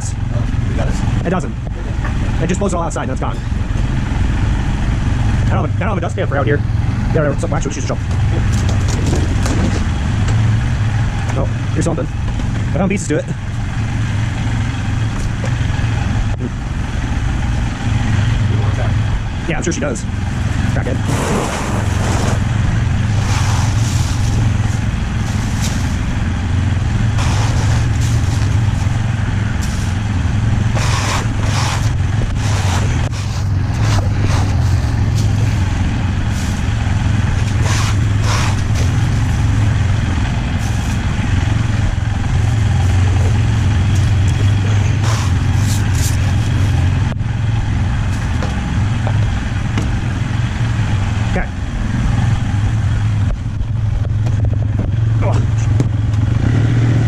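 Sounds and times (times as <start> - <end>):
engine idling: 0.0 - 57.0
clatter: 7.8 - 10.5
hissing noise bursts: 27.1 - 35.6, 37.4 - 39.6, 43.9 - 46.6.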